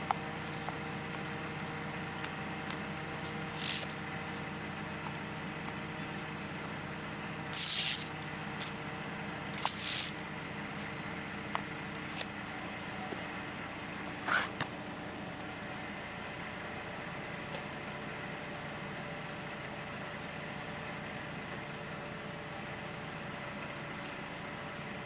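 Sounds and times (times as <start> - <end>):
chainsaw engine running: 0.0 - 13.2
short hissing noises: 3.2 - 4.5, 7.5 - 8.8, 9.5 - 10.2.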